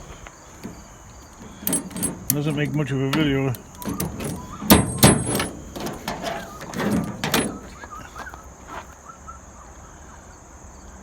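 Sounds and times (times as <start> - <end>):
sharp knocks and clatters: 0.0 - 8.3.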